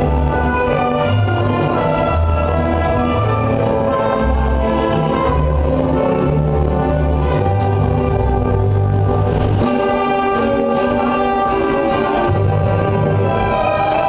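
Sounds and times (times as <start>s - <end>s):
loud orchestral music: 0.0s - 14.0s.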